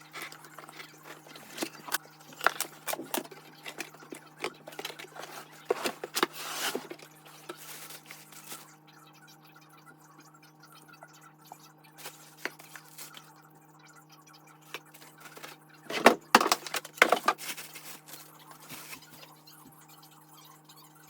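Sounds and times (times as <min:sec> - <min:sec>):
packaging rustling and knocks: 0:00.0 - 0:08.6, 0:12.0 - 0:13.2, 0:14.7 - 0:19.3.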